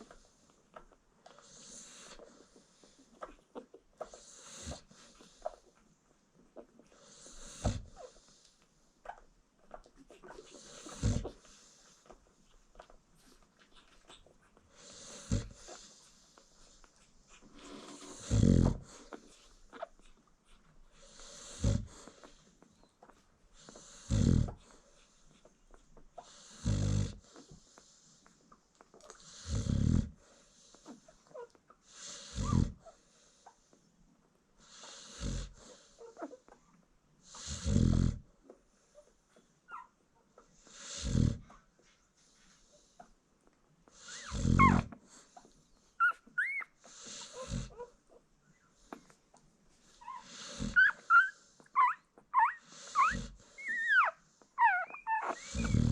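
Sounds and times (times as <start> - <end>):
dog snoring: 1.3 - 3.4, 4.0 - 5.6, 6.8 - 8.4, 10.2 - 12.0, 14.7 - 16.7, 17.4 - 19.9, 21.0 - 22.4, 23.6 - 24.8, 26.2 - 28.0, 29.0 - 33.0, 34.6 - 36.3, 37.2 - 38.3, 40.6 - 41.6, 43.9 - 45.3, 46.0 - 48.0, 49.9 - 55.9
puppies squeaking: 9.0 - 14.6, 15.5 - 20.8, 39.7 - 40.0, 44.1 - 49.2, 49.9 - 55.9.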